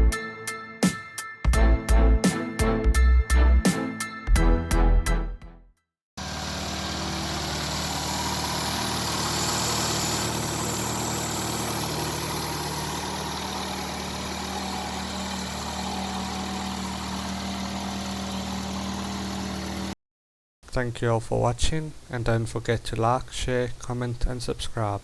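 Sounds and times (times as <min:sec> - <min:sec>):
pickup engine idling: 0:06.2 - 0:20.0.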